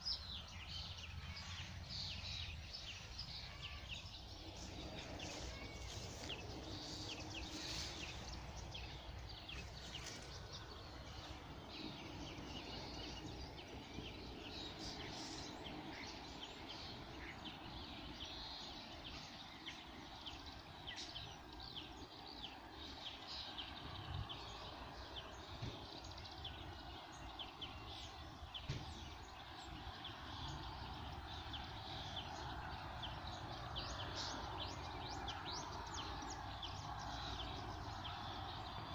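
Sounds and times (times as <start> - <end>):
low background rumble: 0.0 - 22.2
songbirds chirping and singing: 0.0 - 38.9.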